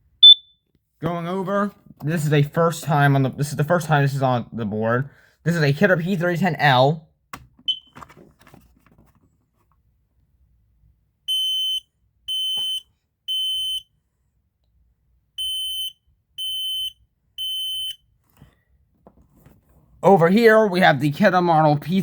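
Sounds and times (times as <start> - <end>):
smoke alarm beeping: 0.2 - 0.6, 7.7 - 7.9, 11.3 - 13.9, 15.4 - 18.0.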